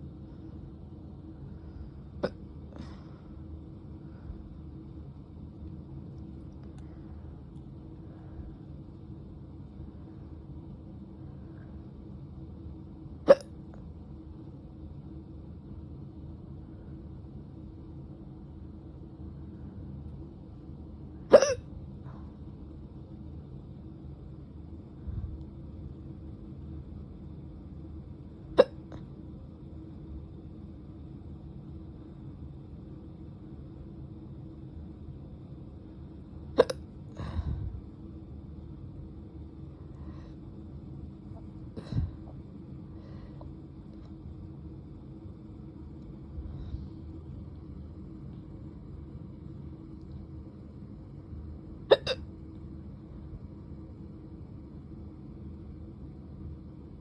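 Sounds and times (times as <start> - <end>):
low background hum: 0.0 - 57.0
sharp hiccup: 13.3 - 13.5, 21.3 - 21.6, 28.6 - 28.8, 36.6 - 36.8, 51.9 - 52.2.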